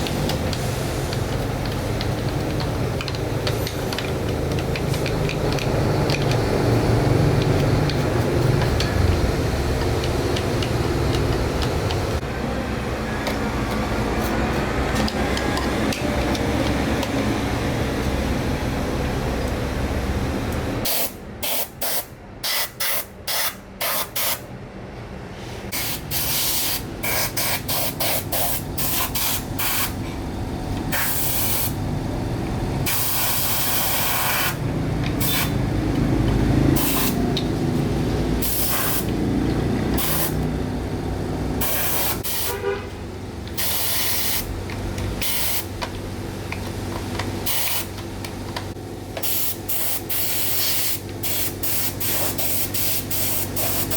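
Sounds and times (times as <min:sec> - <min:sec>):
pressurised spray hissing: 0:30.9 - 0:31.8, 0:38.4 - 0:39.1, 0:40.0 - 0:40.4, 0:49.2 - 0:53.9.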